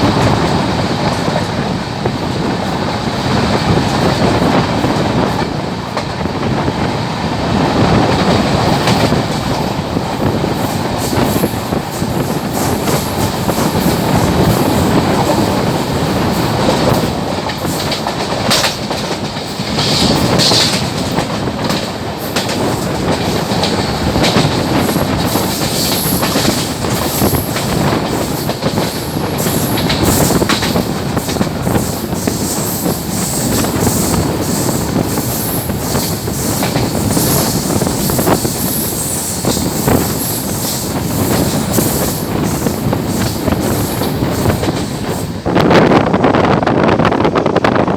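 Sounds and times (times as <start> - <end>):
rush of wind: 0.0 - 47.9
train wheels clattering on rail joints: 0.0 - 47.9
high wheel squeals: 31.7 - 44.6.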